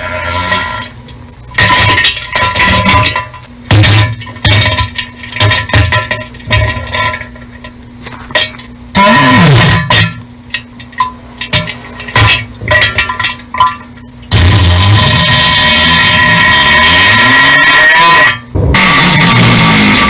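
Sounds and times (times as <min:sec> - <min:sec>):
wet sputtering bursts: 0:14.3 - 0:20.0.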